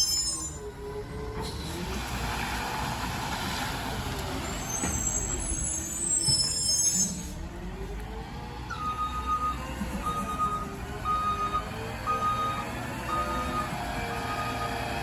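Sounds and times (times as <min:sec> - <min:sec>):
high brake squeals: 0:00.0 - 0:00.7, 0:04.5 - 0:07.4
garbage truck engine: 0:00.0 - 0:15.0.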